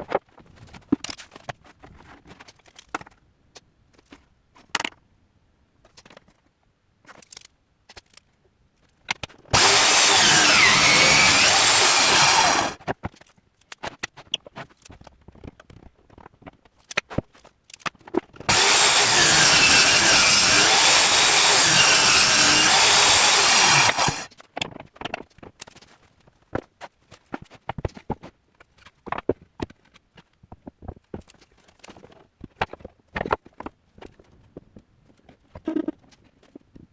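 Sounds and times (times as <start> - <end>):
power tool working wood: 9.6 - 12.8, 18.5 - 24.3.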